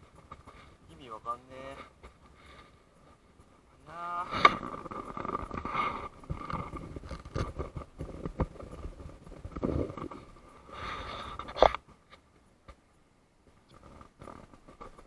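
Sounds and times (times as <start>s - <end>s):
knocks and scraping: 0.0s - 12.8s.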